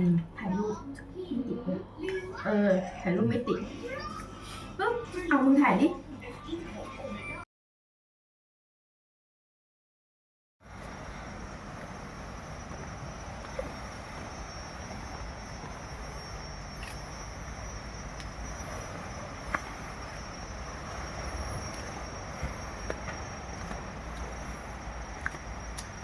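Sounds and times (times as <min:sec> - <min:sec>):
insects trilling: 0:10.7 - 0:26.0.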